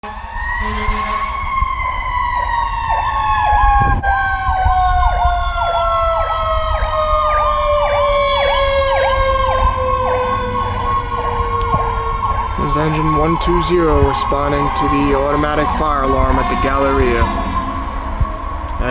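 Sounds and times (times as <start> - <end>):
siren gliding downward: 0.0 - 18.9
warbling siren: 0.0 - 18.9
truck rumble: 9.8 - 18.9.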